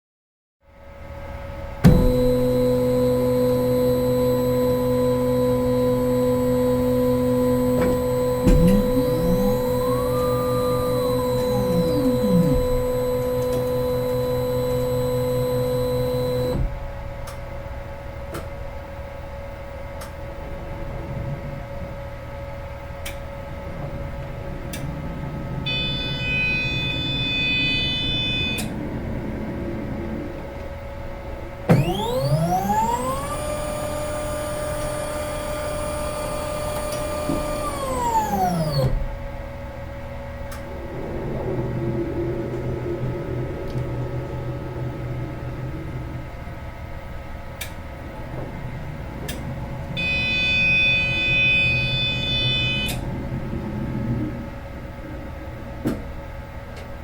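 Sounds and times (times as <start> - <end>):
electronic scanner hum: 1.8 - 16.8, 23.3 - 39.0, 40.7 - 54.3.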